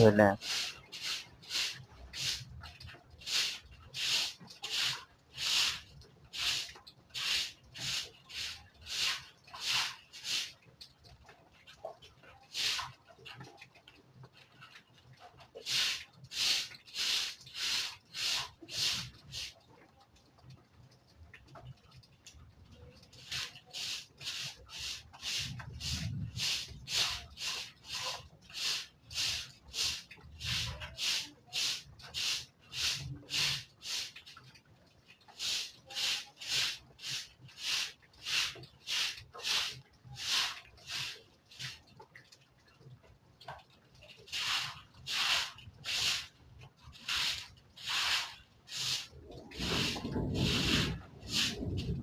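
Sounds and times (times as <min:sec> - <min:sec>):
broom sweeping floor: 0:00.4 - 0:02.4, 0:03.2 - 0:10.6, 0:12.6 - 0:12.9, 0:15.6 - 0:19.5, 0:23.2 - 0:34.2, 0:35.4 - 0:41.8, 0:44.3 - 0:46.3, 0:47.0 - 0:52.0.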